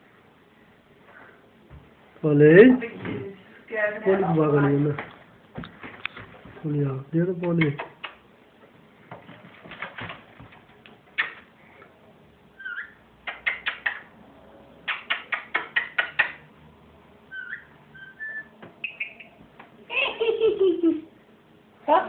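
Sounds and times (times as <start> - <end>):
parakeet chirps: 12.6 - 14.1, 17.3 - 19.4
parakeet laughing calls: 17.3 - 20.8.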